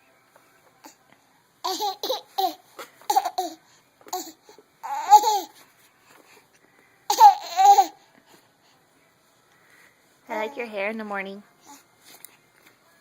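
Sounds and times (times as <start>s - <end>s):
baby fake coughing: 7.1s - 7.9s.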